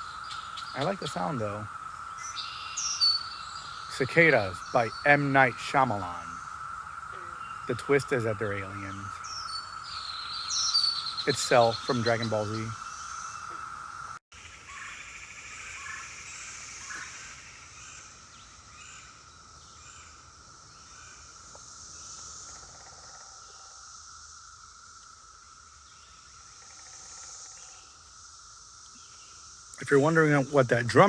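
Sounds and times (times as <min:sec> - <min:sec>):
bird chirps: 0:00.0 - 0:13.8
cicadas chorus hissing: 0:00.0 - 0:31.0.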